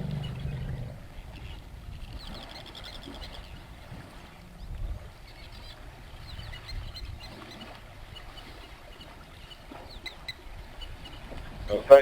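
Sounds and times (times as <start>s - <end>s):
low steady rumble: 0.0s - 1.8s
birds chirping: 0.0s - 12.0s.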